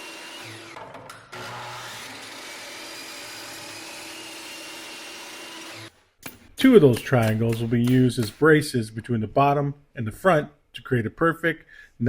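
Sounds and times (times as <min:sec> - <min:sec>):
table saw cutting wood: 0:00.0 - 0:06.4.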